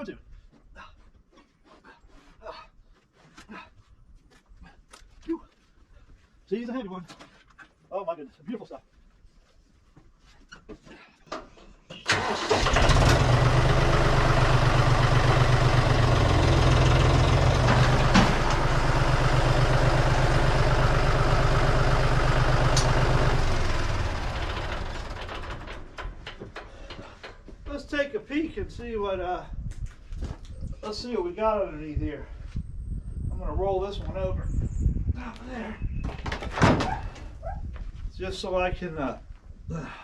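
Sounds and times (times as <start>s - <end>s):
engine running: 12.1s - 26.4s.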